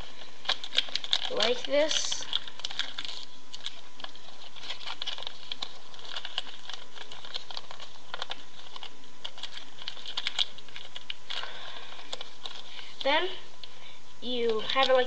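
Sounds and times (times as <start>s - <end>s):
paper folded and creased: 0.0s - 13.1s, 14.6s - 15.0s.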